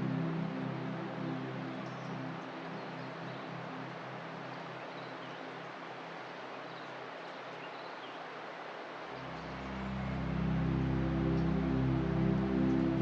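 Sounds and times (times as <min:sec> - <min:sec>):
background music: 0:00.0 - 0:04.8, 0:09.2 - 0:13.0
outdoor ambient hiss: 0:00.0 - 0:13.0.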